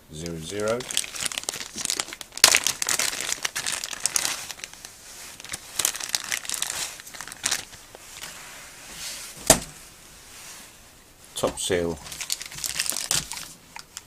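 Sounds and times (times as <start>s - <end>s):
plastic packaging crinkling: 0.2s - 8.5s, 11.4s - 14.0s.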